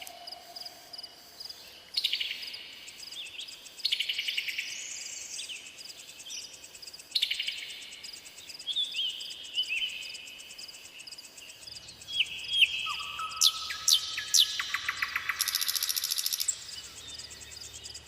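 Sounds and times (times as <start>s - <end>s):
insects chirping in trills: 0.0s - 18.0s
birds whistled chirps: 11.9s - 18.0s.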